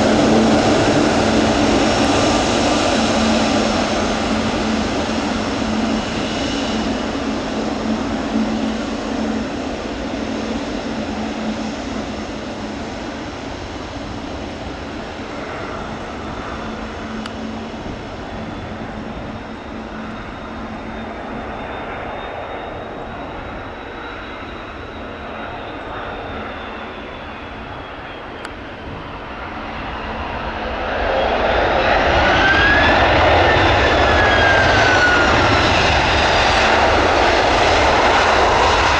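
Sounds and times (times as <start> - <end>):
jet engine whine: 0.0 - 38.9
jet engines droning: 0.0 - 38.9.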